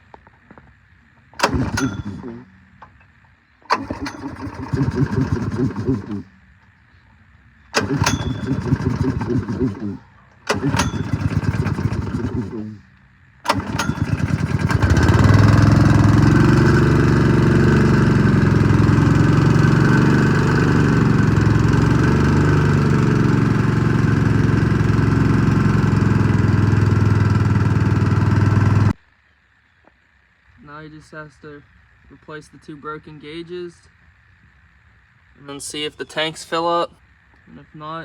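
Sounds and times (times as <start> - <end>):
air compressor engine running: 1.4 - 3.1, 3.7 - 6.7, 7.7 - 29.0.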